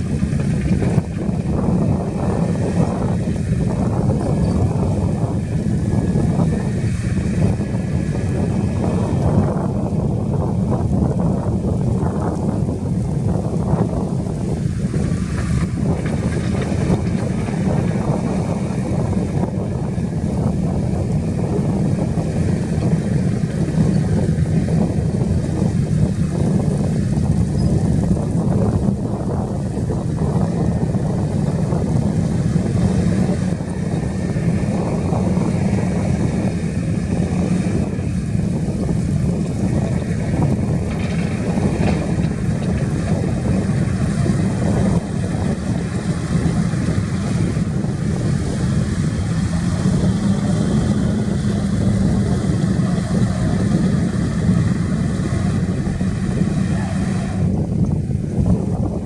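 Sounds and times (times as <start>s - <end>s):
heavy diesel engine running: 0.0s - 59.0s.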